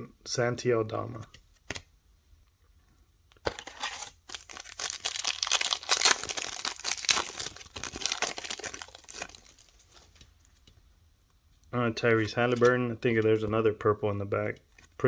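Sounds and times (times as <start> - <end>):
plastic wrapper tearing and crinkling: 3.6 - 10.1.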